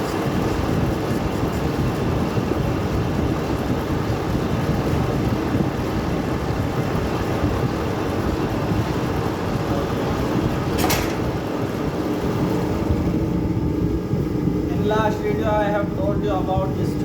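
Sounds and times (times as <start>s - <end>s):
lathe machine rumble: 0.0s - 16.4s.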